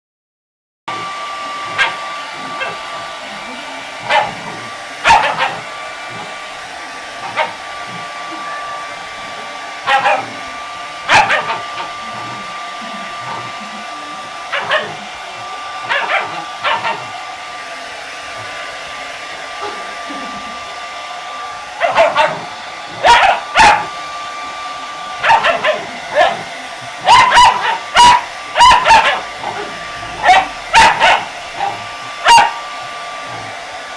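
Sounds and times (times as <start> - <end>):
hair dryer whine: 0.9 - 33.9
puppy barking: 1.7 - 2.9, 4.0 - 6.3, 7.2 - 8.1, 9.8 - 12.4, 14.4 - 15.2, 15.8 - 17.2, 21.8 - 24.0, 25.1 - 32.8.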